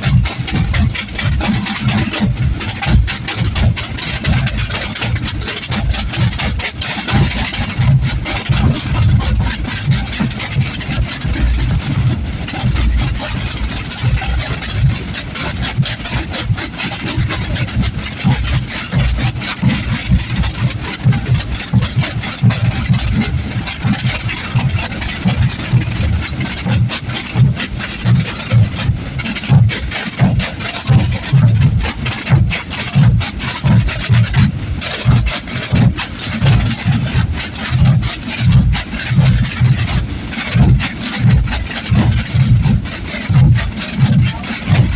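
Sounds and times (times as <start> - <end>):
deep bass drum booms: 17.4 - 44.9.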